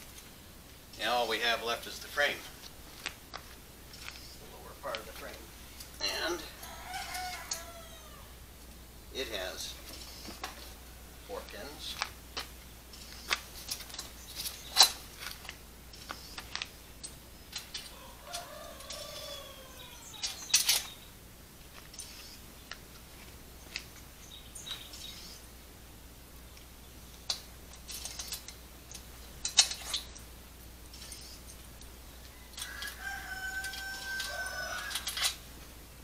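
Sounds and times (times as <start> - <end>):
rooster crowing: 6.0 - 8.5, 17.9 - 20.5, 32.2 - 35.5
metal frame clinks and knocks: 13.6 - 15.5.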